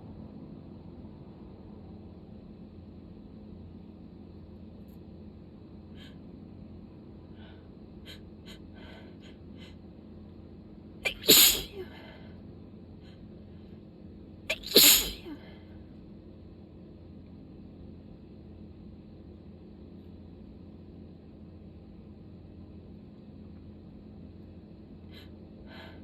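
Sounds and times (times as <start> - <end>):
person sneezing: 11.1 - 12.2, 14.5 - 15.6.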